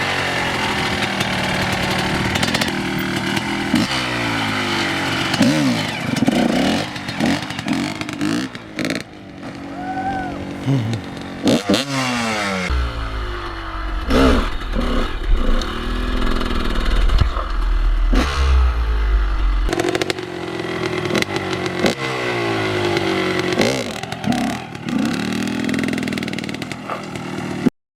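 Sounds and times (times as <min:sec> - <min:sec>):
dirt bike engine revving: 0:00.0 - 0:27.7
low rumble: 0:12.6 - 0:20.0.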